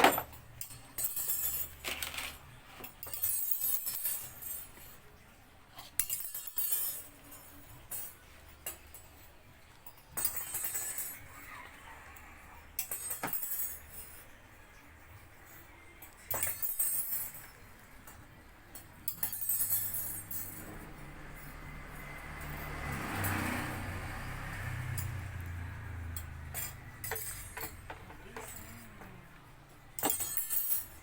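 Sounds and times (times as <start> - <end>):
metal tools clinking and jangling: 0.0 - 5.2, 5.8 - 14.4, 15.1 - 31.0.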